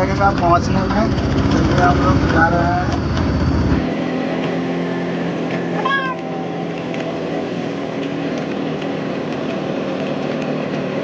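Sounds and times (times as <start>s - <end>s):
vehicle hum: 0.0s - 11.0s.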